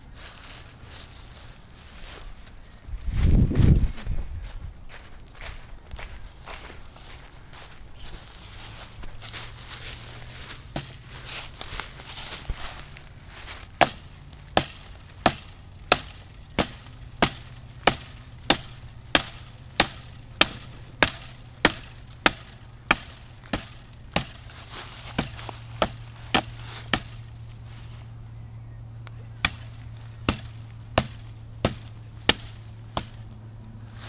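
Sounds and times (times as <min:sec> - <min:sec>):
axe chopping into tree trunk: 0:10.7 - 0:11.0, 0:13.8 - 0:27.4, 0:29.4 - 0:33.3.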